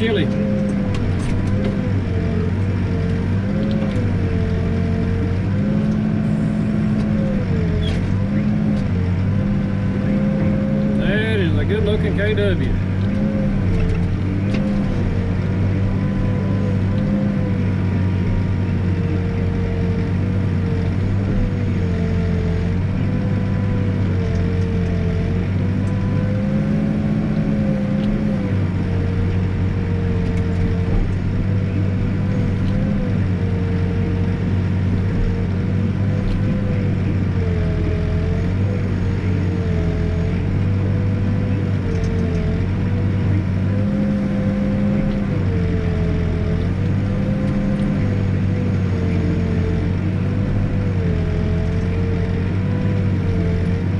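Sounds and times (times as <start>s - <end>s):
backhoe diesel engine running: 0.0s - 53.9s.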